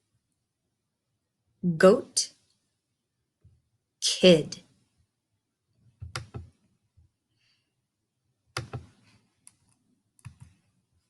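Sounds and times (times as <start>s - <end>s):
faint sharp clicks and taps: 8.5s - 10.7s.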